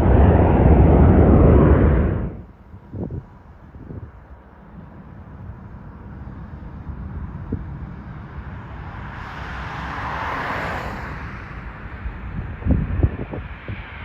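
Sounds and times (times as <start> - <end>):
jet airliner passing by: 0.0 - 3.2, 7.7 - 14.0.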